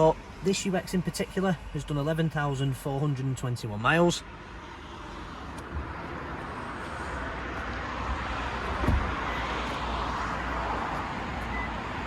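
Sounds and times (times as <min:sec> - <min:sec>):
traffic rushing rumble: 0:00.0 - 0:12.0
dull thump: 0:08.8 - 0:09.2.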